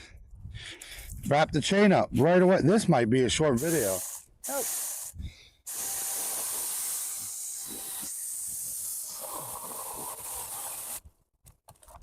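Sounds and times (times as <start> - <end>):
chainsaw cutting wood: 3.6 - 11.1.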